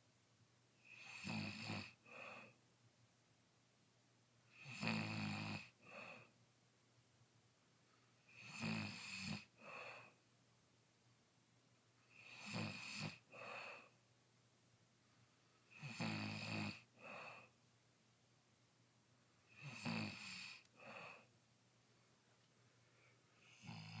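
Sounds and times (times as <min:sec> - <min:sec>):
person snoring: 0:00.8 - 0:02.6, 0:04.5 - 0:06.3, 0:08.3 - 0:10.2, 0:12.1 - 0:14.0, 0:15.7 - 0:17.5, 0:19.5 - 0:21.3, 0:23.4 - 0:24.0.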